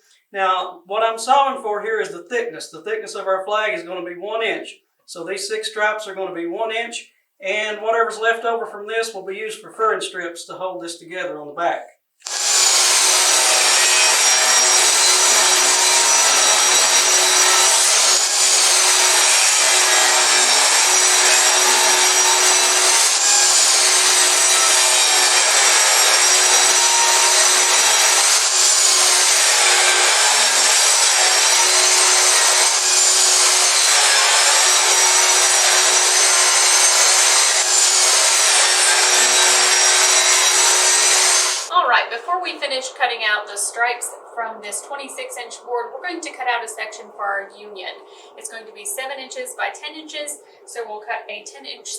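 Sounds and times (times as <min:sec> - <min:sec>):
table saw whining through wood: 0:12.2 - 0:41.7.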